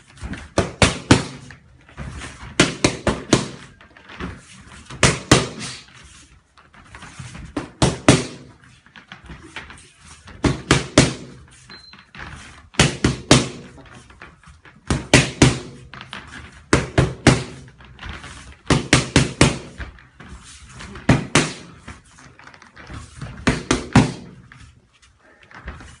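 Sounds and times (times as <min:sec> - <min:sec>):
punches on boxing pads: 0:00.4 - 0:01.5, 0:02.5 - 0:03.7, 0:04.9 - 0:05.9, 0:07.5 - 0:08.5, 0:10.4 - 0:11.4, 0:12.7 - 0:13.7, 0:14.8 - 0:15.9, 0:16.7 - 0:17.7, 0:18.7 - 0:19.8, 0:21.0 - 0:21.7, 0:23.4 - 0:24.4.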